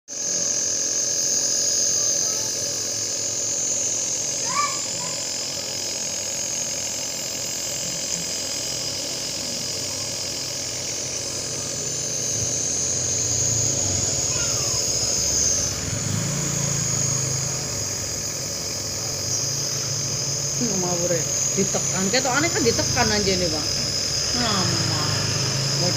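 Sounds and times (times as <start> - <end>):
nebulizer motor hum and hiss: 0.1 - 25.9.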